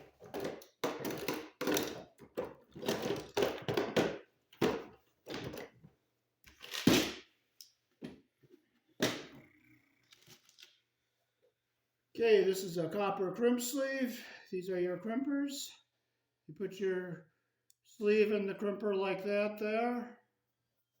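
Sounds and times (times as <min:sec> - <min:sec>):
hand tools knocking and clicking: 0:00.0 - 0:05.6.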